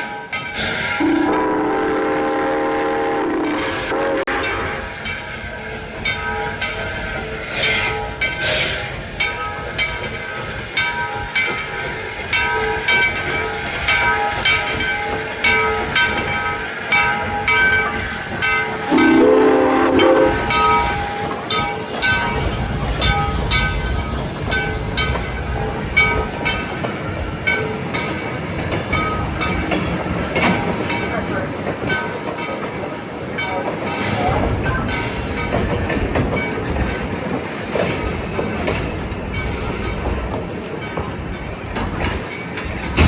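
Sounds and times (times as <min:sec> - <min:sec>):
locomotive horn blast: 0:01.0 - 0:04.8, 0:18.9 - 0:20.9.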